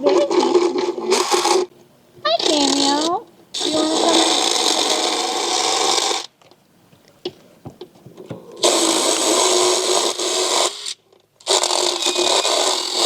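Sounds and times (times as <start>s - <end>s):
motorized dental float grinding teeth: 2.3s - 6.3s, 8.6s - 13.0s.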